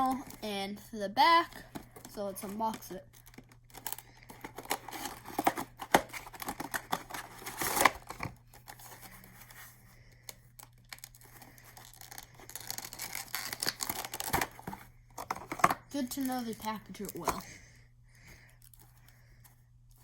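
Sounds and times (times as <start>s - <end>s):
cardboard packaging rustling: 1.2s - 17.5s.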